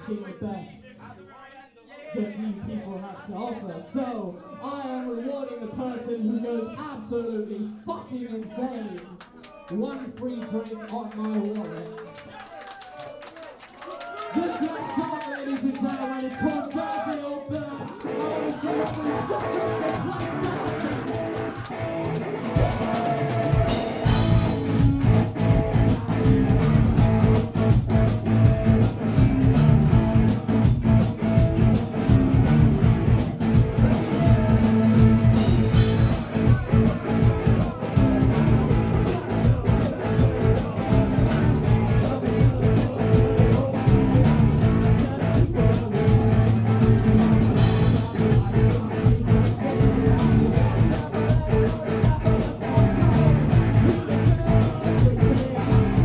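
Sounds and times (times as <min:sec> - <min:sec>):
drum kit beat: 0:17.9 - 0:56.0
bass guitar: 0:18.0 - 0:56.0
electric guitar: 0:18.0 - 0:56.0.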